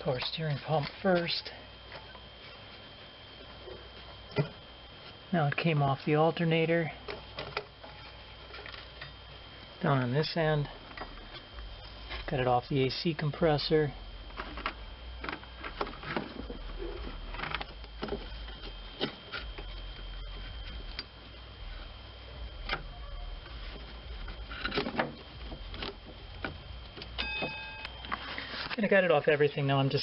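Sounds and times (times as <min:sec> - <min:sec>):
short pitched tone: 0:27.2 - 0:28.0.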